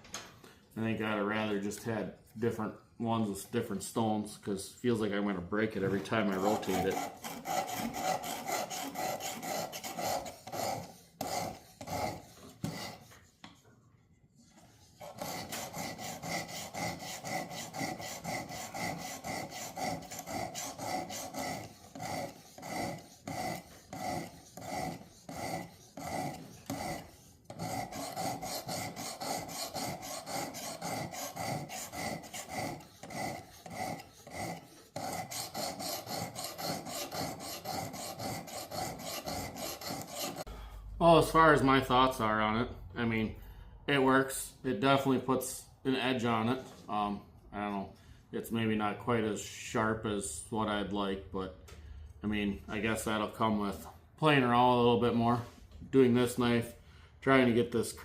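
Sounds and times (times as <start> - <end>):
sharpening stone rasping on blade: 6.2 - 13.2, 14.7 - 40.5.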